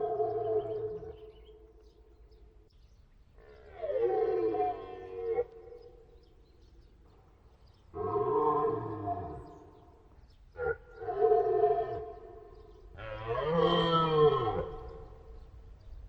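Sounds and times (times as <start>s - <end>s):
red deer stag roaring: 13.0s - 15.1s.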